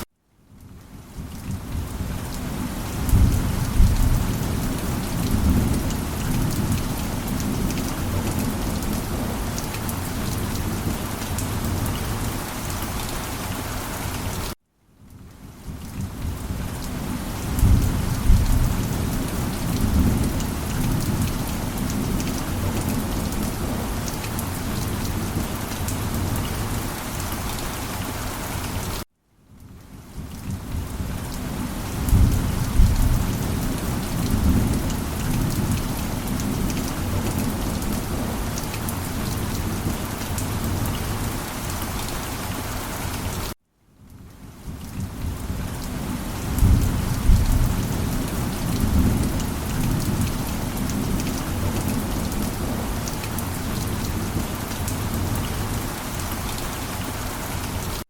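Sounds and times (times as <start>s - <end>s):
heavy rain: 0.0s - 58.0s
rolling thunder: 3.0s - 6.8s, 17.4s - 23.8s, 32.0s - 38.4s, 46.5s - 52.8s.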